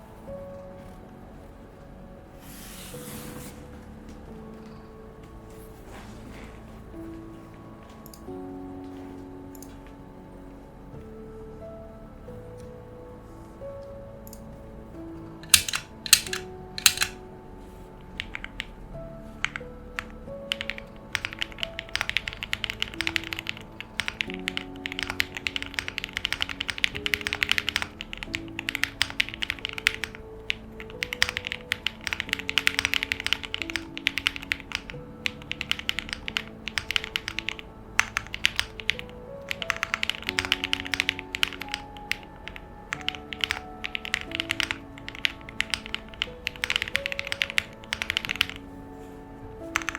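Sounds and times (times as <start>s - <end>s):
background music: 0.0s - 49.9s
fast typing on mechanical keyboard: 15.4s - 17.2s, 20.5s - 48.6s.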